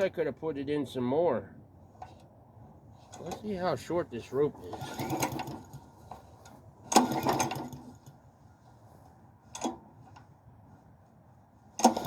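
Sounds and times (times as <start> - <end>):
starter rope pull whirring engine: 4.2 - 10.4, 11.6 - 12.0.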